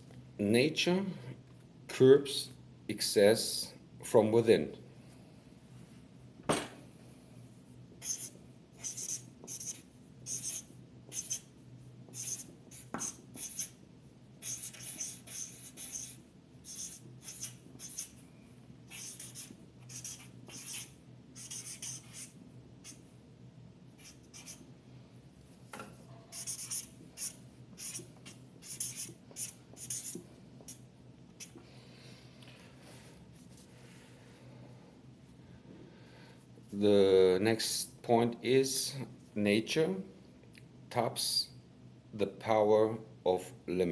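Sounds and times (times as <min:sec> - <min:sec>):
pen scratching on paper: 0:08.0 - 0:11.5, 0:12.1 - 0:13.8, 0:14.4 - 0:18.2, 0:18.9 - 0:23.0, 0:24.0 - 0:24.6, 0:26.3 - 0:30.8.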